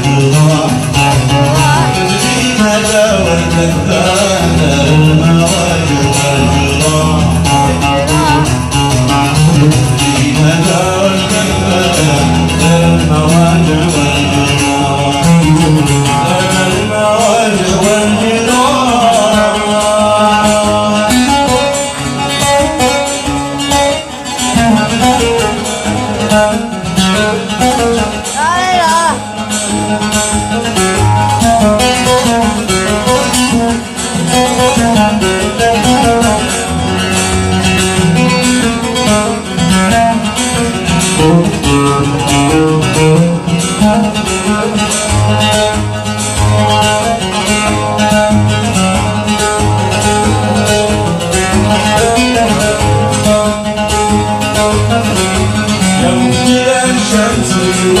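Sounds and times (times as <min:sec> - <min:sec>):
plucked-string melody: 0:00.0 - 0:58.0
steady beat: 0:21.6 - 0:58.0.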